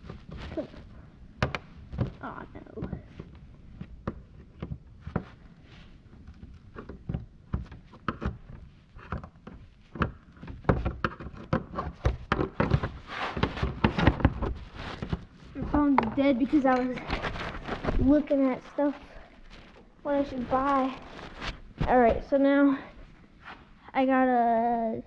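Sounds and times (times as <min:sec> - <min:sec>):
hands handling parts: 0:00.0 - 0:21.9.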